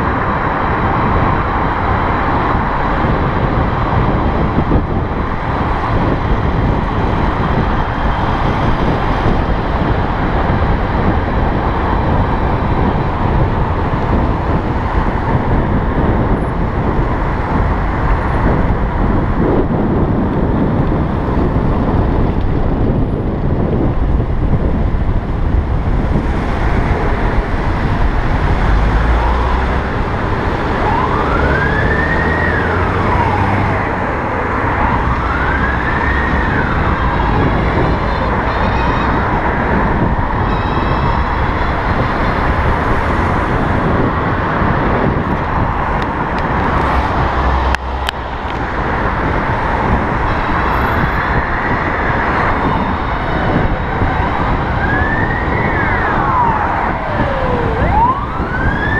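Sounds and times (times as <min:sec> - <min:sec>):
road traffic noise: 0:00.0 - 0:58.9
wind rushing: 0:00.0 - 0:58.9
siren wailing: 0:26.3 - 0:43.8, 0:49.2 - 0:58.9.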